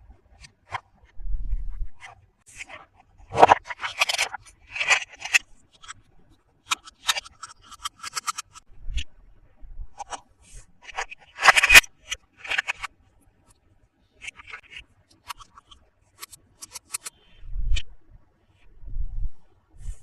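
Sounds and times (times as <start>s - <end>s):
toy packaging being opened: 3.4s - 5.9s.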